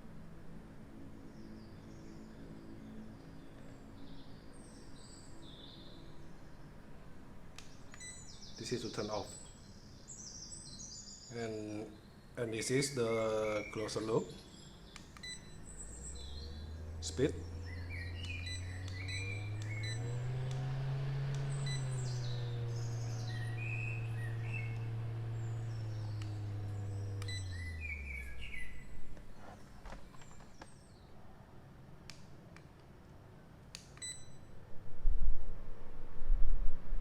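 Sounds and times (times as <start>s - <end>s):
birds chirping: 7.6s - 31.2s
portable fan motor humming: 15.0s - 30.2s.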